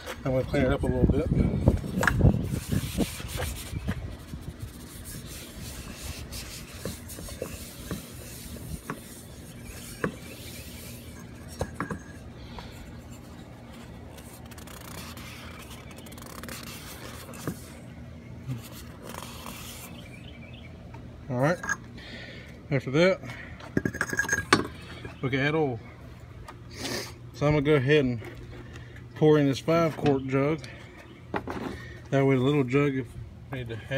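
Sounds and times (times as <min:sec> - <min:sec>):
paper towel wiping inside funnel: 0:02.2 - 0:11.7, 0:13.1 - 0:17.8, 0:18.5 - 0:20.1.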